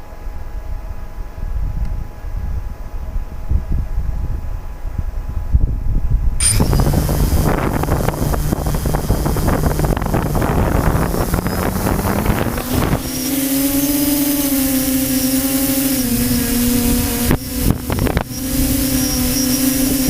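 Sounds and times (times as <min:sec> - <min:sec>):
wind rumble on microphone: 0:00.0 - 0:20.0
small aircraft motor whine: 0:06.4 - 0:20.0.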